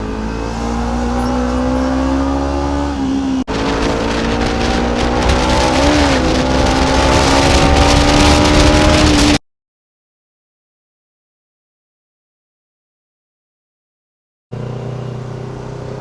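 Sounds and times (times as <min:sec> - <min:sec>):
motorcycle engine running: 0:03.4 - 0:09.4.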